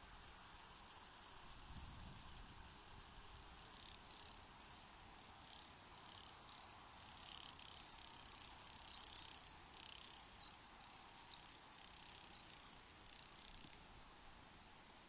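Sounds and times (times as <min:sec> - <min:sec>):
faint steady air hiss: 0:00.0 - 0:15.0
crickets trilling: 0:03.5 - 0:13.8.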